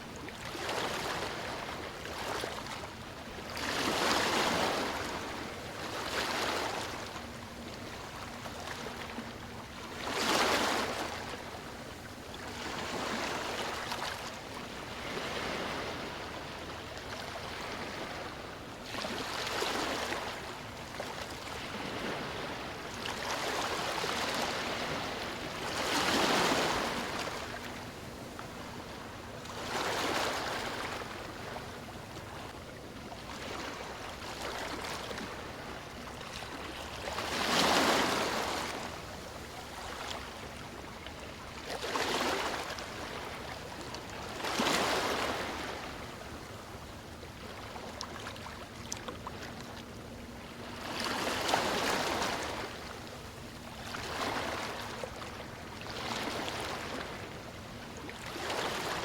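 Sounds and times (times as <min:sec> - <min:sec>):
sea waves breaking on beach: 0:12.5 - 0:20.5, 0:21.4 - 0:27.9, 0:36.6 - 0:40.3.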